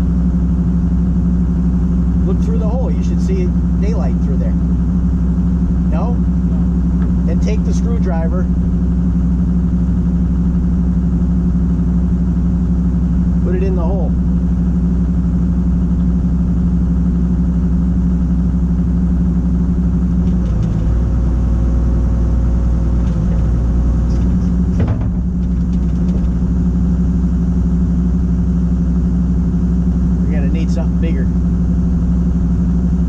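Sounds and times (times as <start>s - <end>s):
excavator diesel engine idling: 0.0s - 33.0s
short metal clank: 24.2s - 26.4s.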